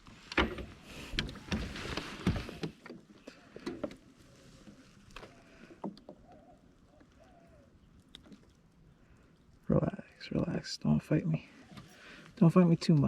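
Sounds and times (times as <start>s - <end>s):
fish splashing and flopping: 0.8s - 9.6s.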